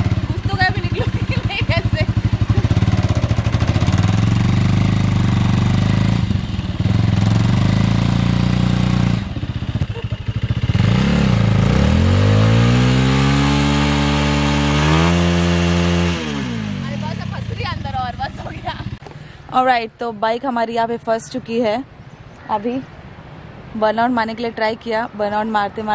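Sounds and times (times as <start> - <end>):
motorcycle engine revving: 0.0 - 19.1.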